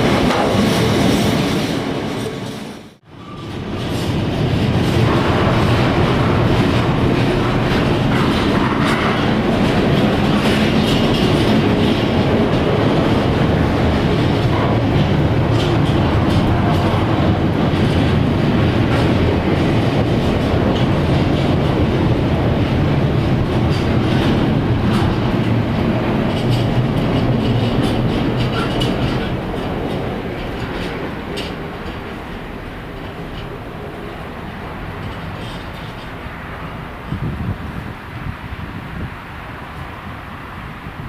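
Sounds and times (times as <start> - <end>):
wheels clicking over rail joints: 0.0 - 38.3
freight train rumbling past: 0.0 - 41.0.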